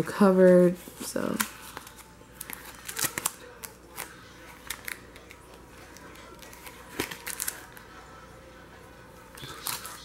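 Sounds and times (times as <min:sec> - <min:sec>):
plastic packaging crinkling: 0:01.0 - 0:07.8.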